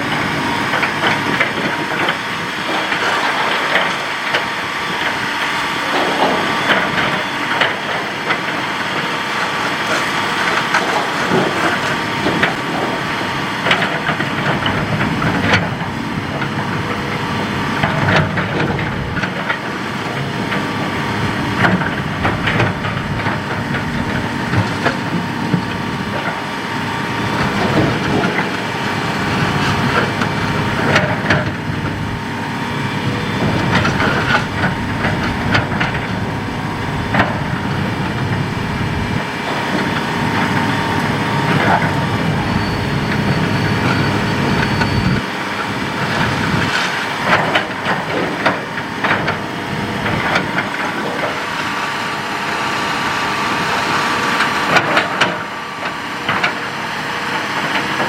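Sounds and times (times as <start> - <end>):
excavator diesel engine running: 12.5 - 26.4, 27.2 - 40.0, 42.1 - 45.2.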